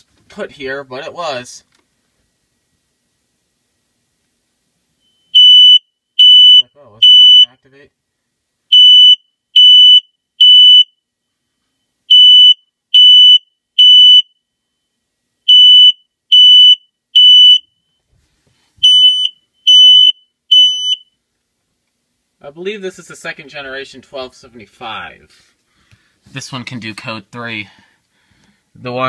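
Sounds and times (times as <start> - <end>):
smoke alarm beeping: 5.0 - 7.6, 8.7 - 11.0, 12.1 - 14.4, 15.5 - 18.0, 18.8 - 21.2.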